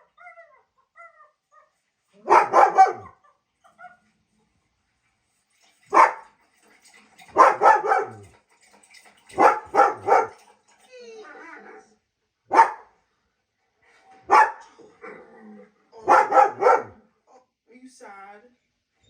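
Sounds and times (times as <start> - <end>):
dog barking: 2.2 - 4.0, 5.9 - 6.3, 7.3 - 8.3, 9.3 - 10.4, 12.5 - 12.9, 14.3 - 14.8, 16.0 - 17.0.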